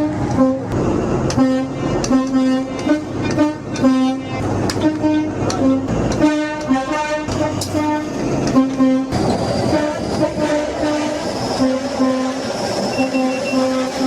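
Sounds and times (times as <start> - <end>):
train two-tone horn: 0.0 - 0.7, 1.3 - 14.0
rumble of moving train: 0.0 - 14.0.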